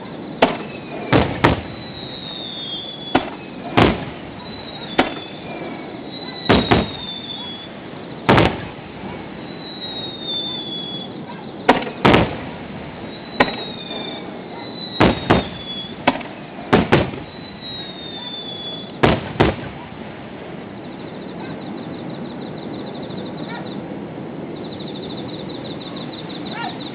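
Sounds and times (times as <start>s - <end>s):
high gliding whistles: 0.0s - 12.1s, 12.9s - 19.0s, 20.8s - 23.9s, 24.5s - 26.9s
fireworks bangs: 0.0s - 20.7s.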